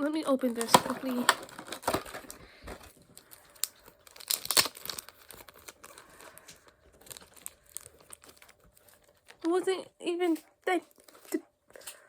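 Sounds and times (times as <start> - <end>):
wrapping crackling and rustling: 0.0 - 12.0
packaging ripping: 0.4 - 9.4.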